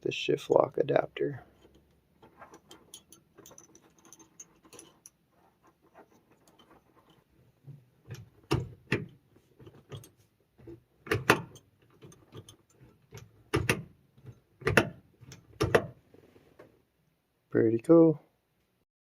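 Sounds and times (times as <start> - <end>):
small metal parts clicking and tapping: 1.5 - 7.3, 8.0 - 16.0.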